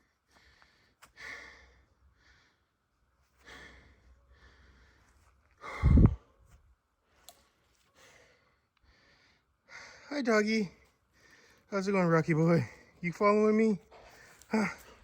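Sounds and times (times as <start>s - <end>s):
person breathing out heavily: 3.4s - 6.4s.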